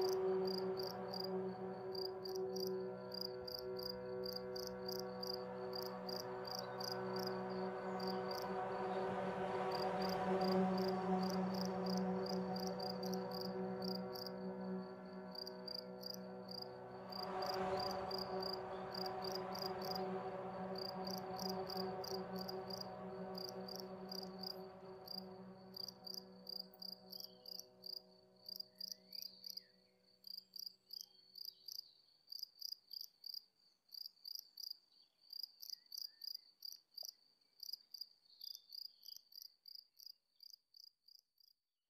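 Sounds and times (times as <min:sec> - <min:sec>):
droning relaxation music chord: 0:00.0 - 0:30.2
crickets chirping: 0:00.0 - 0:40.6.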